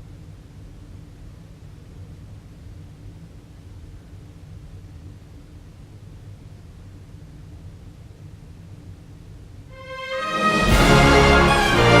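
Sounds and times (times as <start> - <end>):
theme music with steady beat: 9.8 - 12.0.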